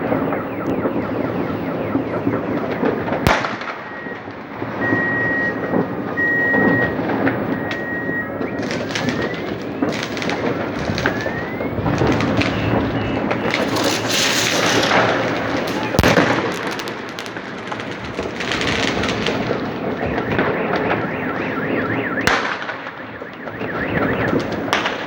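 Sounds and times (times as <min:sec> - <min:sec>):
fireworks crackling and popping: 0:00.0 - 0:25.0
whistling rockets: 0:00.0 - 0:25.0
sharp firework bang: 0:11.8 - 0:19.6.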